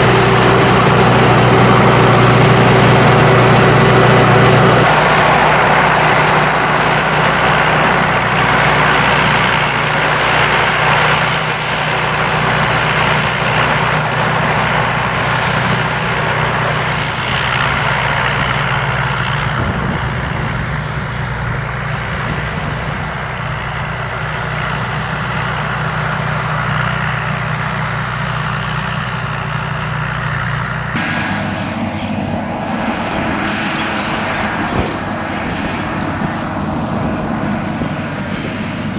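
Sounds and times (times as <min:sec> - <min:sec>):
combine harvester engine drone: 0:00.0 - 0:38.9
high steady whine: 0:00.0 - 0:38.9.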